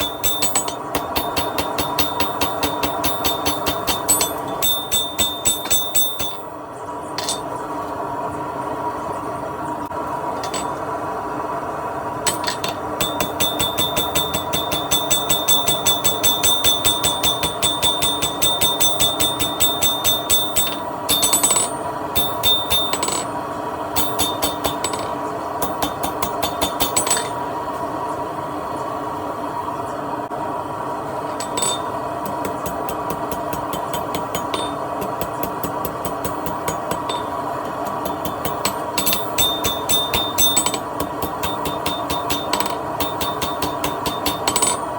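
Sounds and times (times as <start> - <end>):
hammer striking steel on anvil: 0.0 - 6.6, 7.2 - 7.6, 10.4 - 10.8, 12.3 - 23.3, 24.0 - 27.4, 31.4 - 44.9
steady hum: 0.0 - 44.9.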